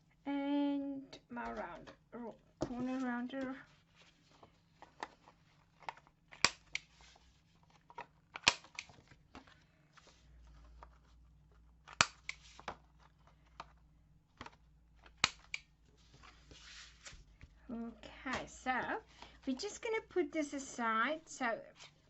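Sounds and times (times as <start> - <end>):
corner punch snapping: 6.4 - 6.8, 8.4 - 8.9, 11.9 - 12.4, 15.2 - 15.6.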